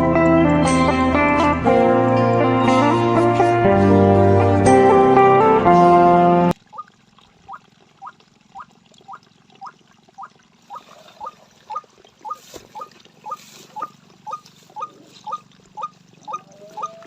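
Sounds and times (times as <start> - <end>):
bird calling: 10.6 - 17.0.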